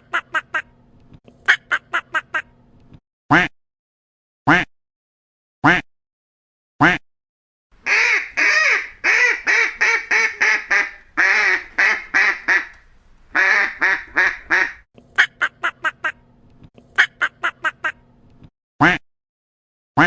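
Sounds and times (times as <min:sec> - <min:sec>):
duck quacking: 0:07.8 - 0:14.8
faint steady hum: 0:07.8 - 0:14.8.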